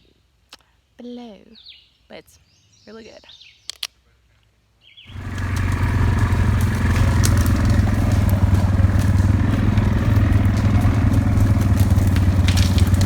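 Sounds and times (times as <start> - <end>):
atv engine running: 5.1 - 13.0
light clicks and clatters: 5.1 - 13.0.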